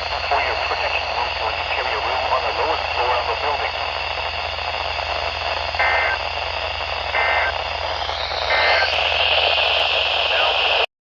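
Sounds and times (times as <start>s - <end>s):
radio static hiss: 0.0s - 10.9s
two-tone digital data bursts: 5.8s - 6.2s, 7.1s - 7.6s.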